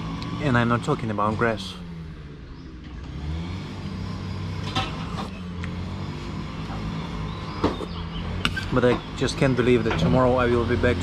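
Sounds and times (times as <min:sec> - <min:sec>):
grass cutter engine running: 0:00.0 - 0:07.6.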